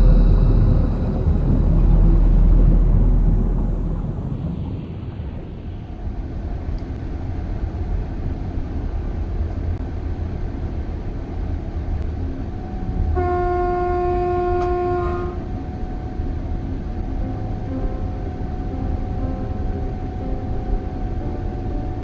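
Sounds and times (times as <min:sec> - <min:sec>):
train rumbling: 0:00.0 - 0:22.0
train horn blast: 0:12.7 - 0:15.6.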